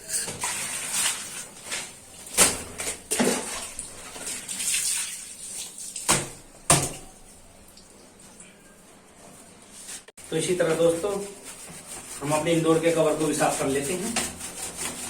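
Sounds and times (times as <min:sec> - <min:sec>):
water splashing: 0:03.1 - 0:08.2.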